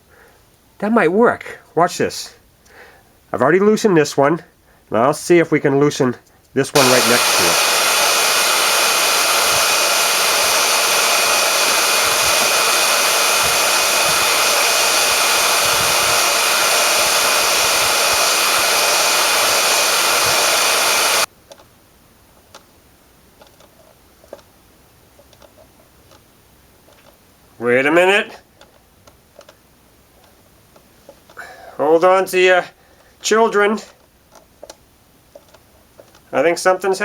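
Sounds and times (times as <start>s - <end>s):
hair dryer blowing: 6.8s - 21.3s.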